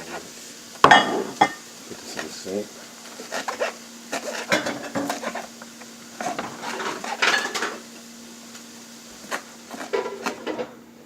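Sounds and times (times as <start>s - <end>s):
dishes and utensils clattering: 0.8s - 1.6s, 4.4s - 5.3s, 6.3s - 7.8s, 9.8s - 10.8s.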